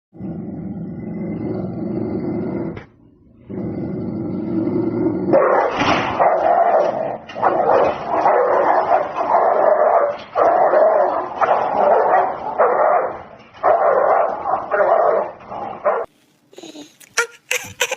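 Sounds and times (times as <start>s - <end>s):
dog barking and whining: 5.3s - 17.9s.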